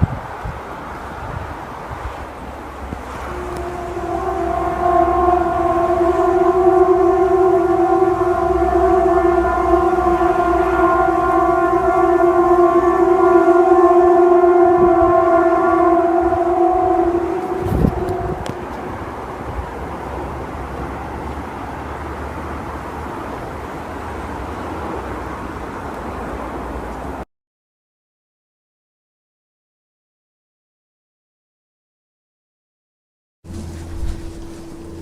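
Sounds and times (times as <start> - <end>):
steady droning tone: 2.5 - 25.6, 33.5 - 35.0.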